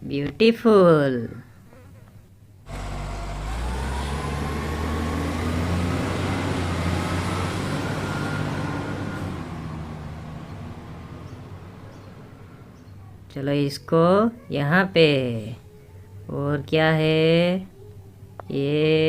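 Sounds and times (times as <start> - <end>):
vehicle engine running: 2.6 - 13.3.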